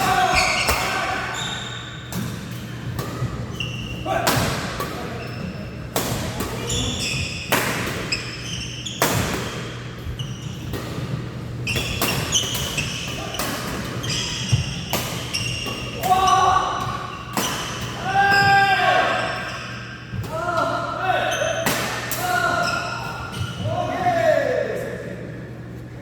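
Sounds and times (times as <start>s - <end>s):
shoes squeaking on court floor: 0.1s - 4.1s, 5.1s - 5.8s, 6.6s - 16.4s.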